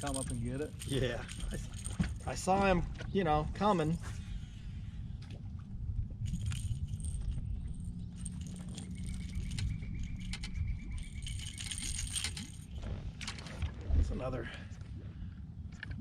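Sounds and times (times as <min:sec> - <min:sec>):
metallic jingling of fishing hooks: 0:00.0 - 0:02.3, 0:06.3 - 0:12.8
steady low rumble: 0:00.0 - 0:16.0.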